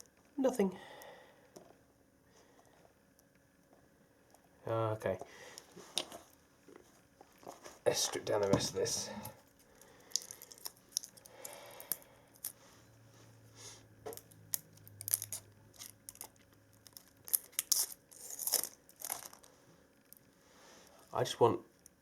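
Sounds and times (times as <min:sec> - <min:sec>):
wrapping tearing and crinkling: 0:09.4 - 0:12.6, 0:14.2 - 0:19.6.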